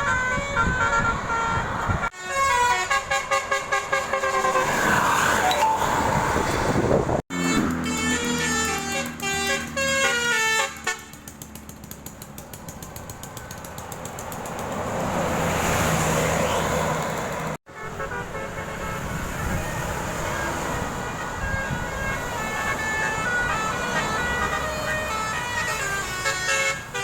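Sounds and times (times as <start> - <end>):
multi-note musical bus horn: 0.0 - 6.6, 7.3 - 11.2, 17.7 - 27.0
bus passing: 0.0 - 27.0.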